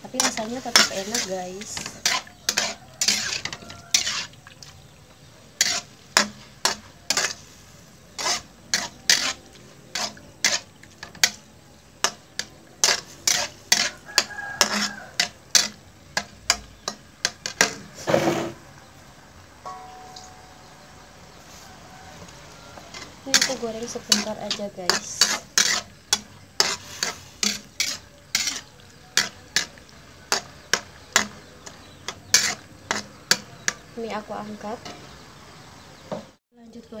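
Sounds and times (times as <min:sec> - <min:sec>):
spatula scraping frying pan: 0:00.0 - 0:18.6, 0:20.4 - 0:34.0
faint sizzle of frying: 0:00.0 - 0:37.0.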